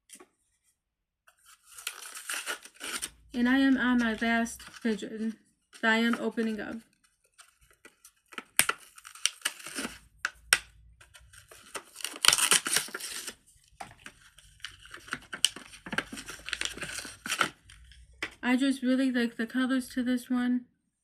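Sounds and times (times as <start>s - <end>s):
plastic packaging crinkling: 1.4s - 18.4s
packaging tearing rip: 1.5s - 3.2s, 7.4s - 10.0s, 11.3s - 13.4s, 14.5s - 17.8s.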